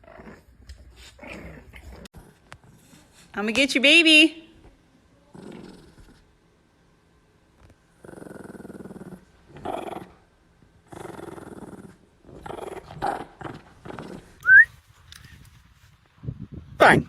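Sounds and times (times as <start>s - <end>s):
dog growling: 0.0s - 2.4s, 5.3s - 6.2s, 7.9s - 10.2s, 10.8s - 14.4s.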